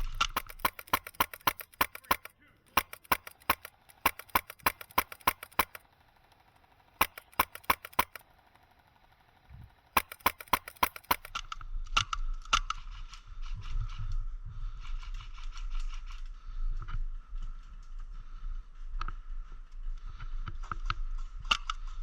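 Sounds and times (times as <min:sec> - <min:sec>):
airsoft guns firing: 0:00.0 - 0:08.6, 0:09.8 - 0:11.5.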